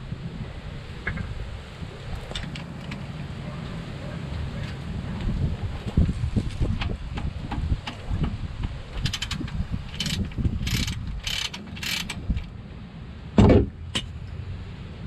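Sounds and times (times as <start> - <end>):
wind buffeting microphone: 0.0 - 15.0
hissing and rattling bursts: 8.9 - 12.5.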